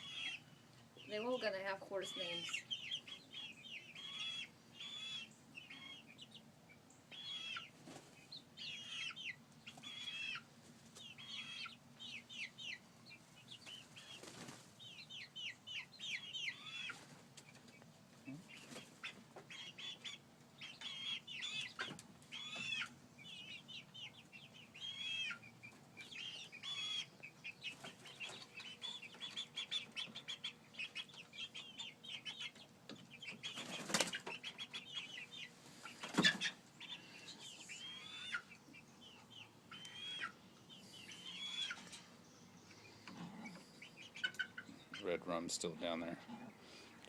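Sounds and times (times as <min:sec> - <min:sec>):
chicks peeping and chirping: 0:00.0 - 0:47.0
wings flapping: 0:14.0 - 0:14.7, 0:33.5 - 0:34.4.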